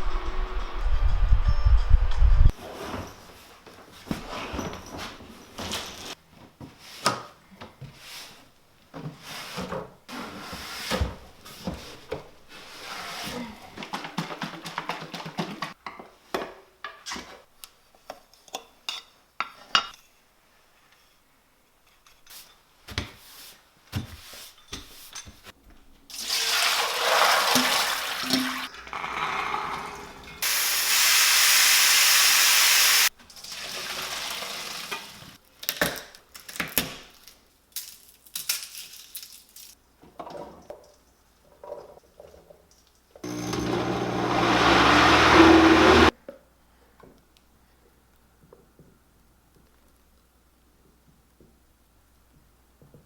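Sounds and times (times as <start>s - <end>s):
water running from a tap: 26.2s - 35.4s.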